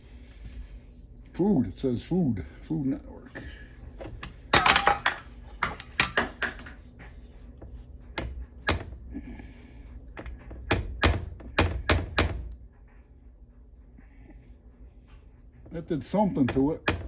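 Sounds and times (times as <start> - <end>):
hammer tapping sheet metal: 10.7 - 12.8, 16.3 - 17.0.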